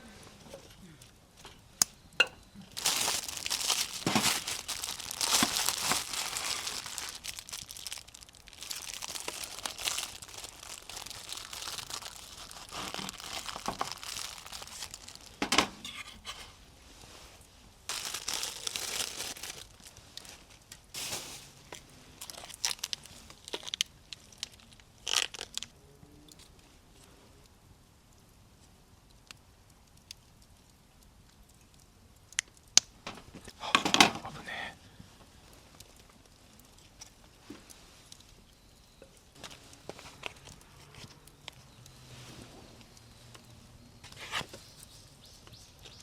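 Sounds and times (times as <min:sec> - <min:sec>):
crinkling and rustling: 0:02.6 - 0:25.7, 0:35.1 - 0:46.0.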